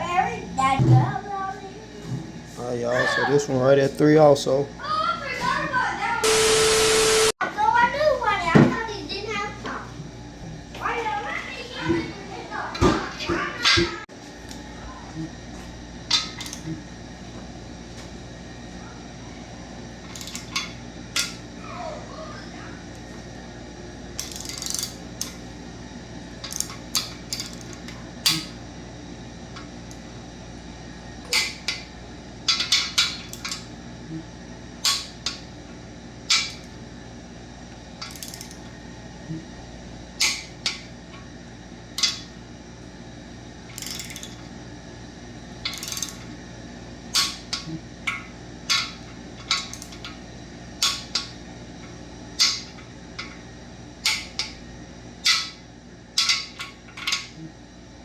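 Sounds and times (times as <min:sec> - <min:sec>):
steady low hum: 0:00.0 - 0:58.0
metal tools clinking and tapping: 0:26.4 - 0:28.5, 0:42.0 - 0:42.3, 0:43.7 - 0:44.4, 0:45.6 - 0:46.3, 0:55.3 - 0:55.6, 0:56.2 - 0:57.3.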